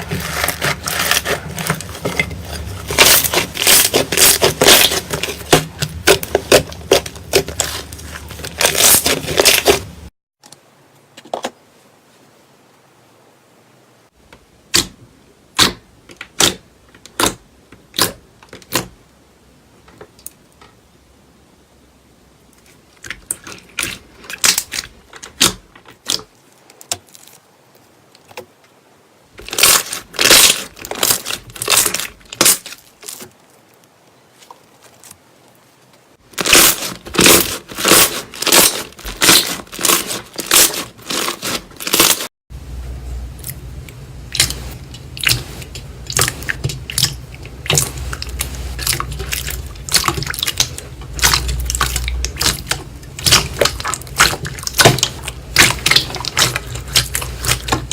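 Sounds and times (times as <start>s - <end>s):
slime crackling and popping: 0.0s - 10.1s, 29.4s - 33.5s, 36.3s - 42.3s, 44.3s - 57.9s
steady low hum: 42.5s - 57.9s.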